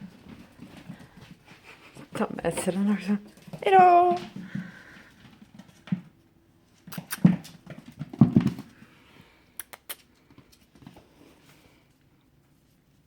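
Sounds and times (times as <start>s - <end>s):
puppy scuffling and thumps: 0.0s - 8.9s.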